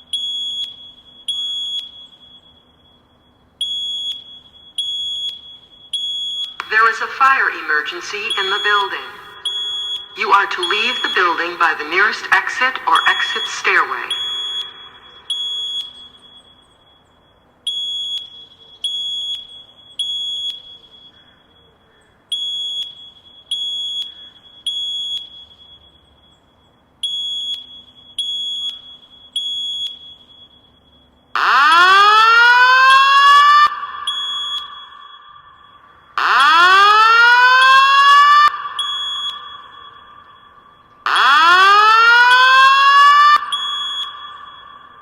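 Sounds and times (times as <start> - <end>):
fire alarm high beeps: 0.0 - 45.0
rising whoop alarm tone: 31.4 - 35.5, 36.2 - 40.4, 41.1 - 45.0.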